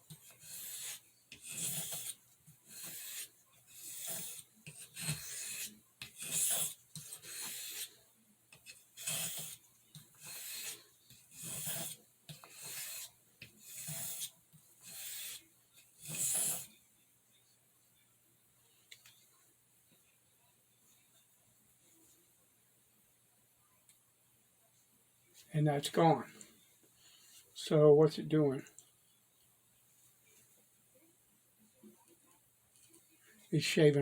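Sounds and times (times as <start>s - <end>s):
knife scraping on whetstone: 0.1s - 8.0s, 8.6s - 15.4s, 16.0s - 16.7s.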